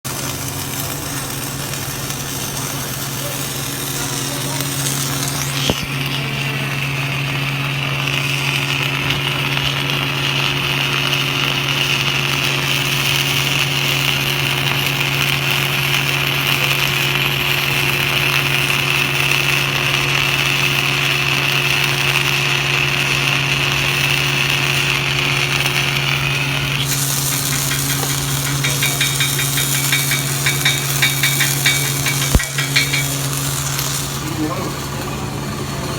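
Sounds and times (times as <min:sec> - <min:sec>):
welding arc burning: 0:00.1 - 0:35.2
low machine hum: 0:25.7 - 0:35.9
rapid even tapping: 0:26.8 - 0:33.6.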